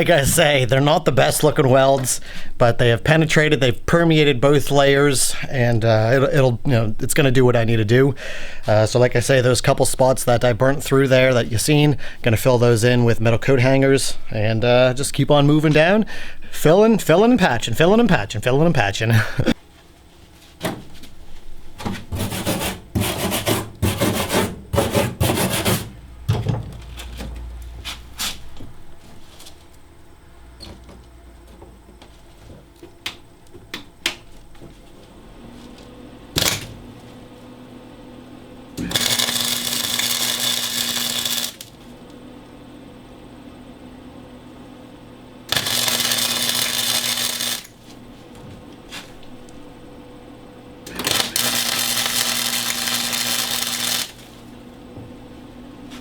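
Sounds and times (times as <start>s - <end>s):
welder hissing: 38.8s - 41.8s, 45.5s - 47.8s, 50.9s - 54.4s.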